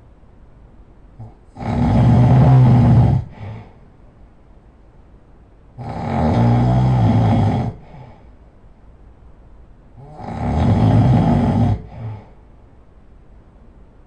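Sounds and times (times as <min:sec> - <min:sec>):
person snoring loudly: 0:01.2 - 0:03.8, 0:05.8 - 0:08.2, 0:10.0 - 0:12.4
quiet breathing: 0:01.2 - 0:04.4, 0:05.8 - 0:08.8, 0:09.9 - 0:12.9.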